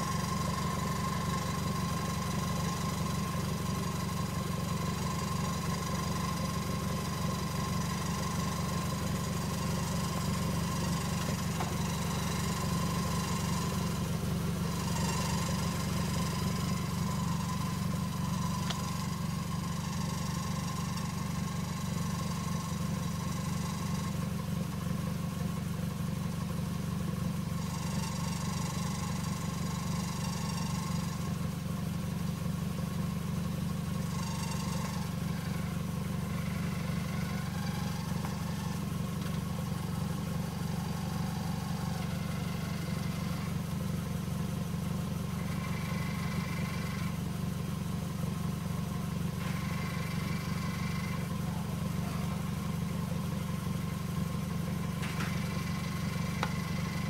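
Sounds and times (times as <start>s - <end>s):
car engine idling: 0.0s - 57.0s
exhaust ticking and vibrating: 0.0s - 57.0s.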